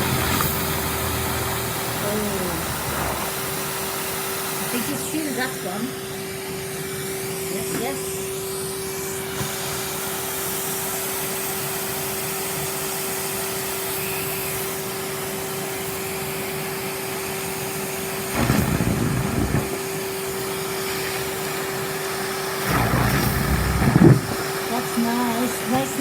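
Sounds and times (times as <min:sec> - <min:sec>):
sweet rattling up vacuum hose: 0:00.0 - 0:05.5, 0:18.4 - 0:26.0
vacuum cleaner running: 0:00.0 - 0:26.0.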